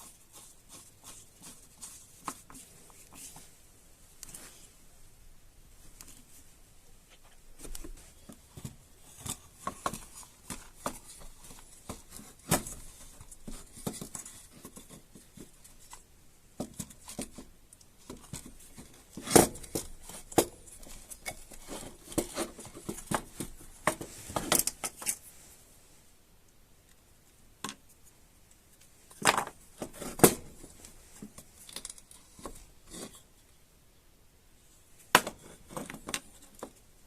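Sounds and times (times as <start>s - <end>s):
clicks and knocks of parts handled: 27.6s - 33.3s, 35.1s - 36.8s.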